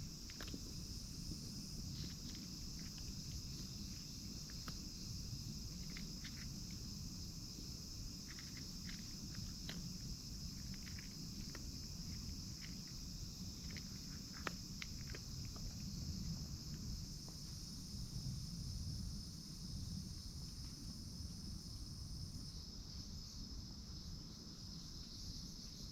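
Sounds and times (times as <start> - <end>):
low wind rumble: 0.0 - 23.4
insects chirring: 0.0 - 25.9
small clicks and taps: 13.6 - 15.8.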